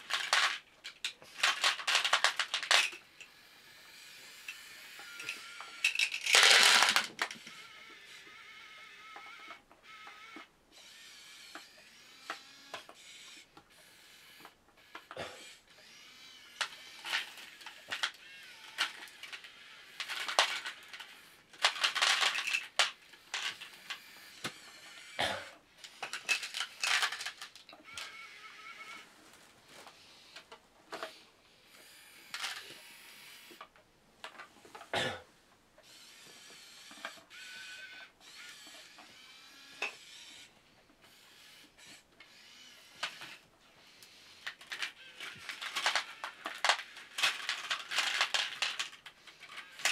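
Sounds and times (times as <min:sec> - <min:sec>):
clicks and rattles: 0:00.0 - 0:03.1, 0:04.5 - 0:07.5, 0:16.6 - 0:24.6, 0:25.8 - 0:28.1, 0:44.4 - 0:49.9
small electric motors whirring: 0:00.0 - 0:33.7, 0:35.8 - 0:49.9.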